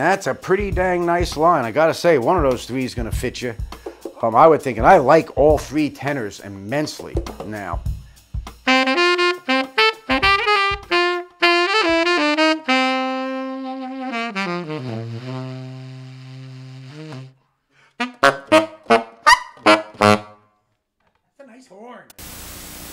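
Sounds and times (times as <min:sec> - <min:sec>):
tenor saxophone playing: 0:08.6 - 0:20.6.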